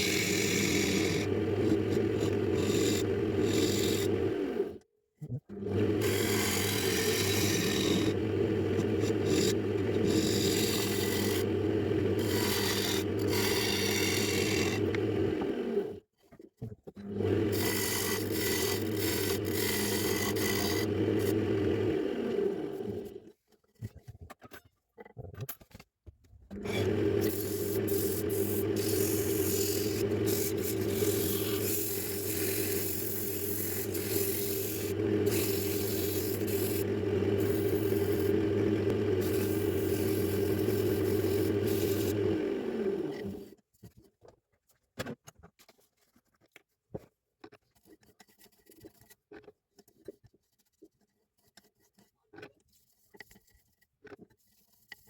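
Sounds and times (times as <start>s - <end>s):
power tool rasping on wood: 0.0s - 4.8s, 5.7s - 16.0s, 17.1s - 23.2s, 26.6s - 43.5s
handling taps and scrapes: 43.7s - 55.0s.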